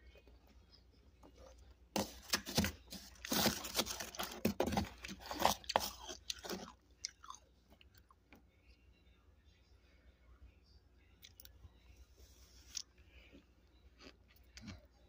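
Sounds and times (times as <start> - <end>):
person chewing crunchy frost: 2.0 - 8.2, 12.6 - 14.9.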